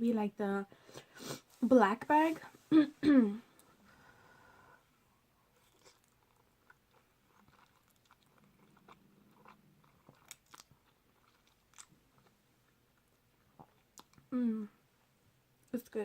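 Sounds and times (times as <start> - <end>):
chewing noodles: 5.6 - 14.2.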